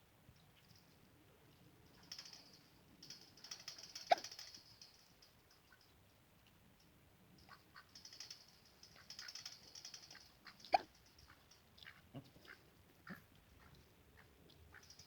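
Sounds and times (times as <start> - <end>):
faint rapid clicking: 0.4 - 12.6, 13.3 - 15.0.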